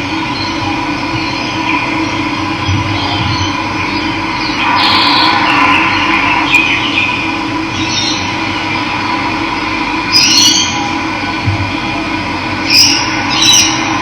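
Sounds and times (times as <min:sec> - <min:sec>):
birds chirping: 0:01.2 - 0:08.8, 0:12.6 - 0:14.0.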